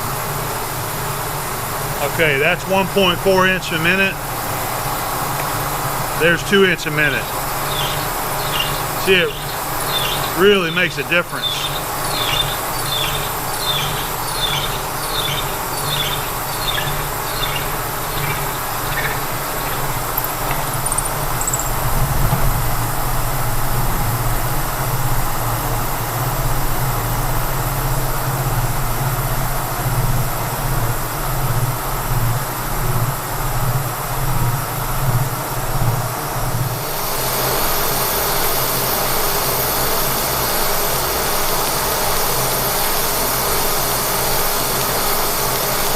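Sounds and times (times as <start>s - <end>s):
milling machine hum: 2.8s - 25.1s.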